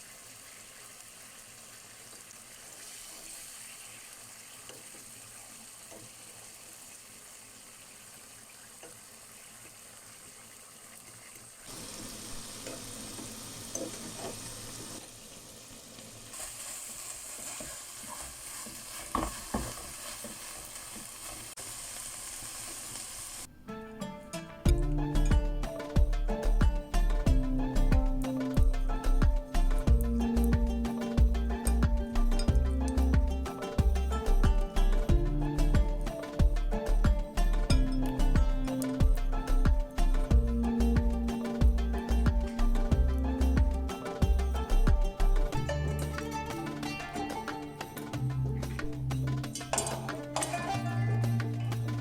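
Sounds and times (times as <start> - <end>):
food sizzling in frying pan: 0.0 - 23.5, 24.8 - 52.0
utensil scraping against pan: 16.4 - 21.4.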